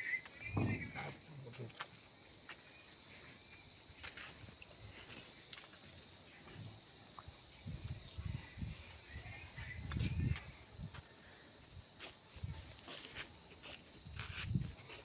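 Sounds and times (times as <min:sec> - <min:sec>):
crickets trilling: 0:00.0 - 0:15.0
low thump: 0:00.5 - 0:01.0.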